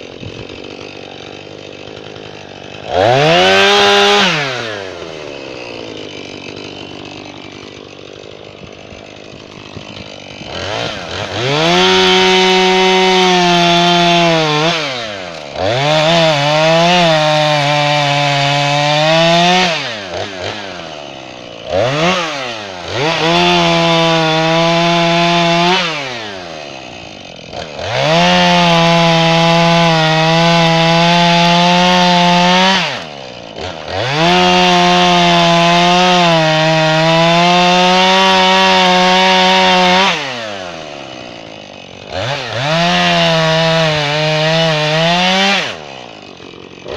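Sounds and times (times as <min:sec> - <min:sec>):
chainsaw cutting wood: 0:00.0 - 0:46.9
chainsaw engine: 0:00.0 - 0:46.9.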